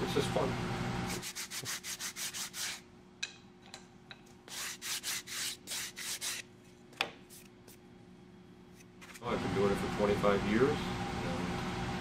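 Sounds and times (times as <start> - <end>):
sandpaper on wood: 1.1 - 2.8, 4.5 - 6.4.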